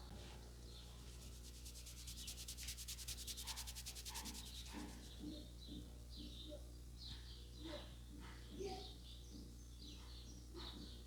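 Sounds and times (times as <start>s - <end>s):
hands rubbing hair: 1.0s - 5.2s.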